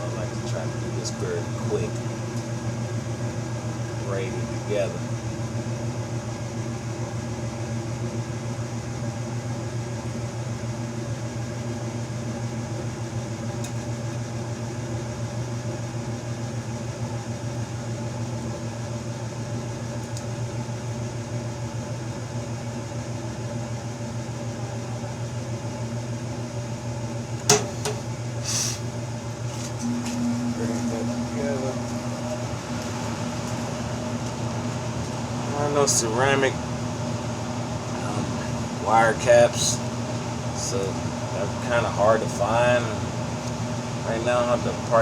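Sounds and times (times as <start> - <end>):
motor humming: 27.2 - 45.0
brief hiss: 28.4 - 28.8.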